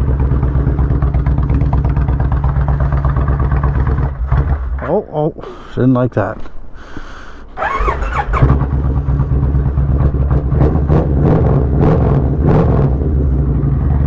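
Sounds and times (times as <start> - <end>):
motorcycle engine idling: 0.0 - 10.9
electric starter whine: 7.3 - 8.8.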